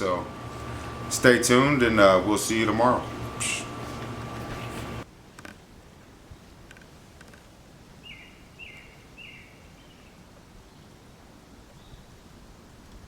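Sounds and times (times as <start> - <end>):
steady hum: 0.0 - 5.0.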